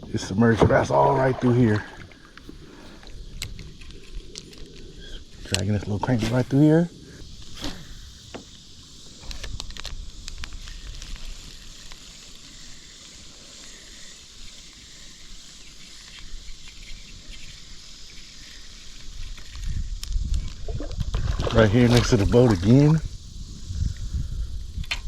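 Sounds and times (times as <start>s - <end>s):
insects chirping: 0.0s - 25.0s.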